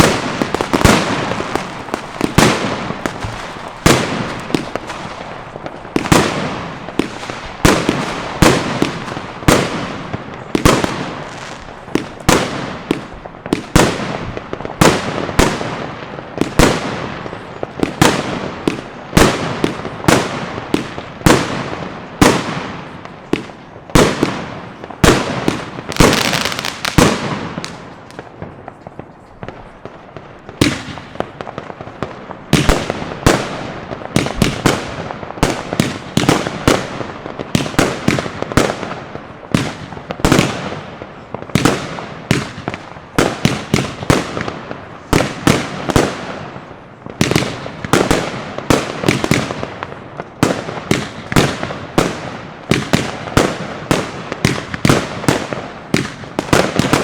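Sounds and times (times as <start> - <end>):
firework batteries banging: 0.0 - 9.7.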